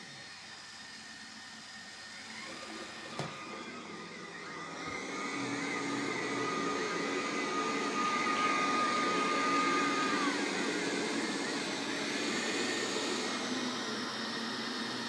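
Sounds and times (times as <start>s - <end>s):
robot vacuum cleaner whirring: 0.0s - 15.0s
high motor whine: 4.4s - 14.3s.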